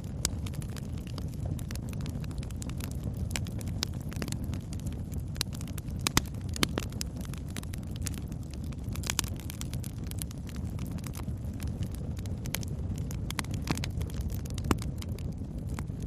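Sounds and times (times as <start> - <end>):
low rush of flames: 0.0 - 16.0
sharp fire pops: 0.0 - 16.0
wood crackling: 0.0 - 16.0.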